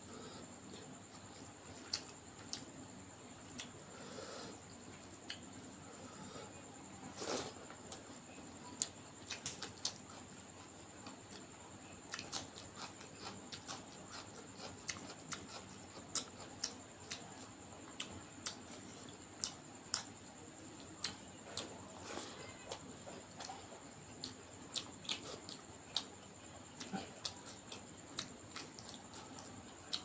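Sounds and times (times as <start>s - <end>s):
wet chewing and lip smacks: 1.1s - 2.7s, 8.8s - 11.5s, 12.1s - 20.2s, 23.3s - 30.0s.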